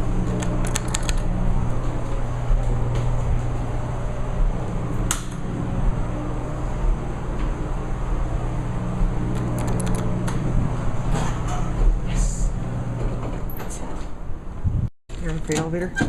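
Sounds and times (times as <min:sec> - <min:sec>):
low mechanical hum: 0:00.0 - 0:16.0
sharp clicks: 0:00.4 - 0:01.2, 0:09.4 - 0:10.1.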